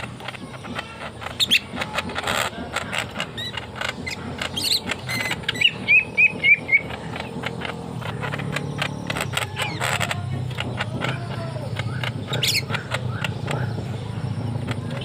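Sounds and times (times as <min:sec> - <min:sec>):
bird singing chirps and whistles: 0:03.3 - 0:07.4
loud whistled bird notes: 0:04.6 - 0:06.9.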